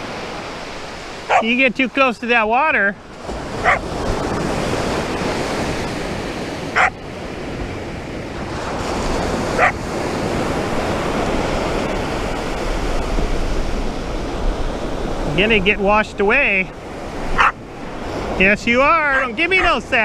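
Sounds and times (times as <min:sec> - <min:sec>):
ocean surf washing on shore: 0:00.0 - 0:20.0
dog barking: 0:01.3 - 0:01.5, 0:03.6 - 0:03.8, 0:06.7 - 0:07.0, 0:09.6 - 0:09.8, 0:17.3 - 0:17.6, 0:19.1 - 0:19.3.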